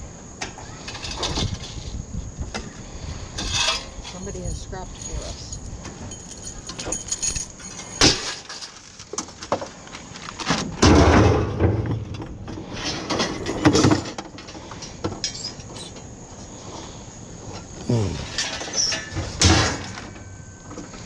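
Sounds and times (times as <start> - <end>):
metal rattle: 3.4 - 8.9
scrap metal clanking and scraping: 3.4 - 9.0.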